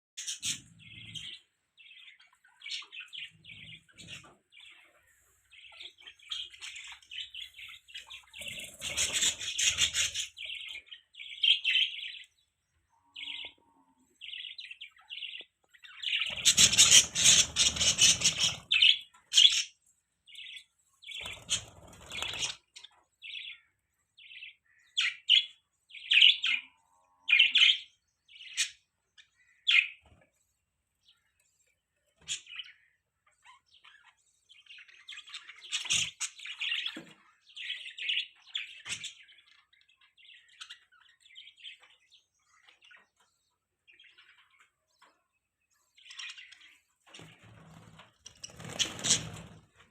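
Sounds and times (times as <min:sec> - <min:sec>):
budgerigars chirping: 0:00.2 - 0:12.3, 0:14.2 - 0:30.1, 0:32.2 - 0:43.2.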